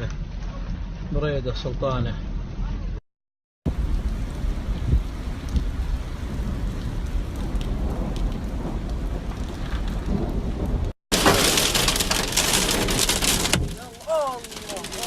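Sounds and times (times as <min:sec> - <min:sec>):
wind and rain rumble: 0:03.7 - 0:15.0.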